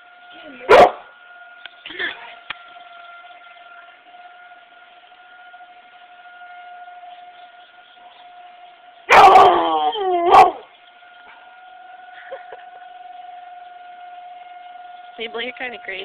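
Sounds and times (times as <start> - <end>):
tornado siren steady tone: 0.0 - 16.0
dog yelping: 9.1 - 10.6
dog howling: 9.1 - 10.7.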